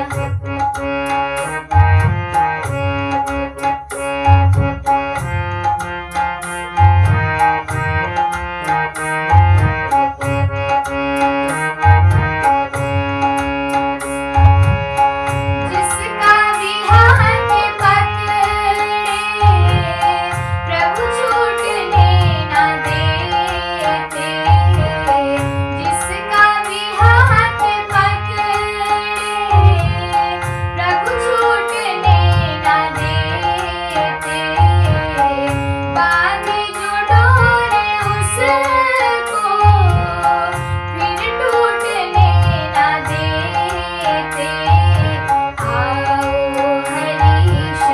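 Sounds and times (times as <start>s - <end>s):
woman singing devotional song: 0.0s - 0.3s, 15.6s - 47.9s
accompanying instruments: 0.0s - 47.9s
tabla-style percussion: 0.0s - 47.9s.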